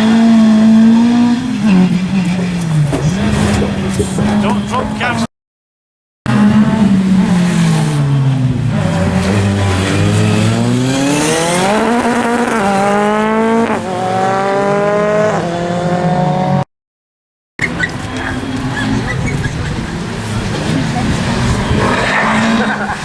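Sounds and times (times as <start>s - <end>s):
gear upshifts: 0.0s - 5.3s
rally car engine revving: 0.0s - 5.3s, 6.3s - 16.6s, 17.6s - 23.0s.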